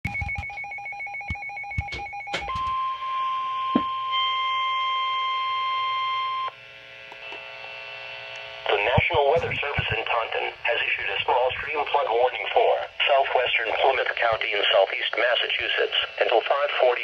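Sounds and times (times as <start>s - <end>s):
steady warning alarm tone: 0.0s - 17.0s
pulsing two-tone beeping: 0.1s - 6.5s
faint radio hum: 6.9s - 17.0s.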